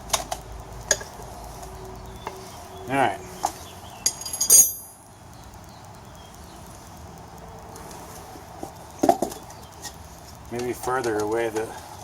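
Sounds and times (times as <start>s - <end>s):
low background noise: 0.0s - 12.0s
tire irons knocking on wheel: 8.6s - 9.8s.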